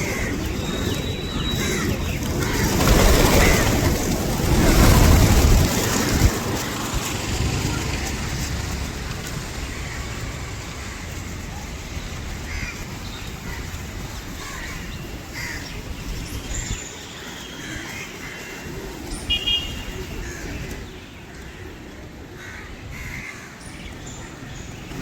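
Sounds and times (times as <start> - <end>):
loud bird call: 0.0 - 6.6
wind rumble on microphone: 0.0 - 16.9
flock of birds calling: 0.0 - 25.0.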